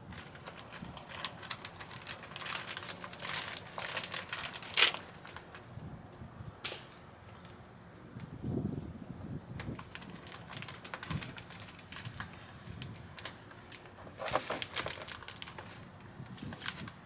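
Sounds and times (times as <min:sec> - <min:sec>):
plastic bag crinkling: 0:00.0 - 0:05.7, 0:09.7 - 0:17.0
plastic bag snapping: 0:00.1 - 0:05.6, 0:09.6 - 0:17.0.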